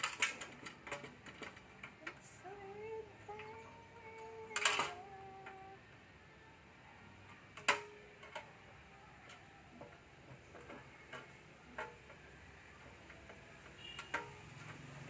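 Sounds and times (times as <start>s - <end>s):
small clicks and taps: 7.2s - 15.0s.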